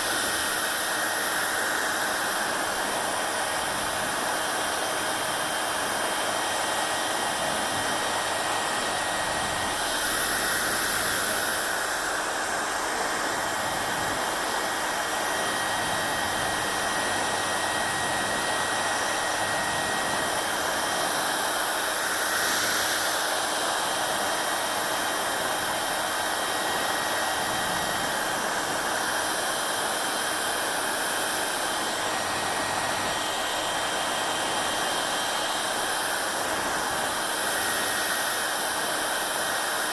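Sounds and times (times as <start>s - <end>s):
hair dryer blowing air: 0.0s - 39.9s.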